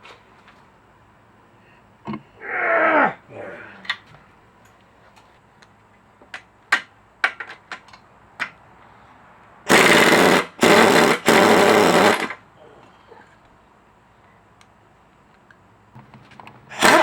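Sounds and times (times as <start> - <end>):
pneumatic impact wrench rattling: 9.7 - 12.4, 16.7 - 17.0.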